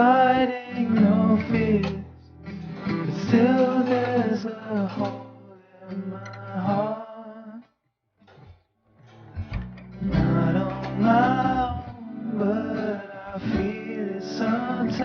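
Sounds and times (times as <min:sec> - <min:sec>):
person singing: 0:00.0 - 0:02.1, 0:03.0 - 0:07.6, 0:10.0 - 0:15.0
acoustic guitar: 0:00.0 - 0:15.0.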